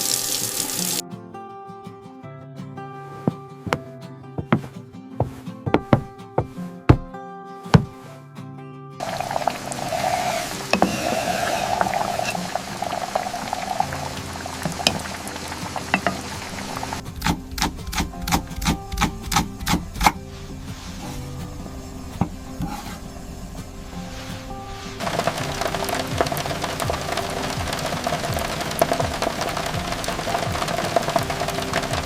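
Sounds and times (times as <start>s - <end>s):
food sizzling in a hot pan: 0.0s - 1.0s, 9.0s - 17.0s, 22.4s - 32.0s
soft background music: 0.0s - 32.0s.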